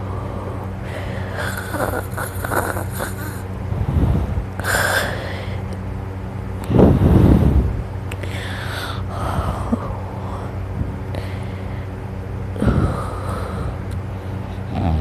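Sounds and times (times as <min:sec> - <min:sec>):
low hum: 0:00.0 - 0:15.0
person snoring: 0:01.3 - 0:03.4, 0:14.6 - 0:15.0.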